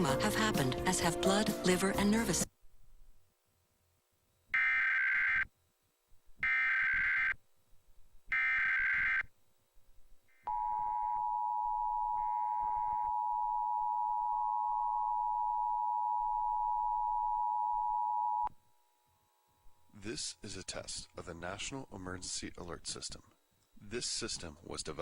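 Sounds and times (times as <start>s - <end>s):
raspy warbling data bursts: 6.5s - 7.4s, 8.4s - 9.3s.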